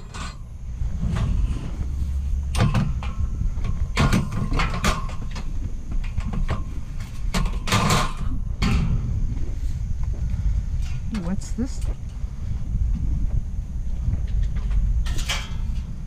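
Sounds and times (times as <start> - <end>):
scrap metal knocks and clanks: 0.0 - 9.1, 14.2 - 16.0
steady low rumble: 0.0 - 16.0.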